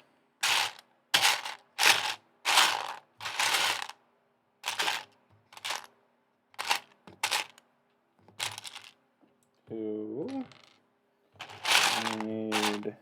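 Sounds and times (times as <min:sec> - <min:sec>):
plastic toy bricks clattering: 0:00.4 - 0:03.9, 0:04.6 - 0:05.9, 0:06.6 - 0:07.6, 0:08.4 - 0:09.0, 0:10.3 - 0:10.8, 0:11.4 - 0:12.9.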